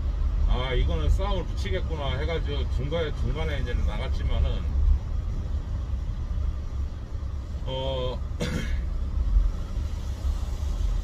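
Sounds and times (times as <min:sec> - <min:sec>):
person coughing: 0:08.4 - 0:08.9.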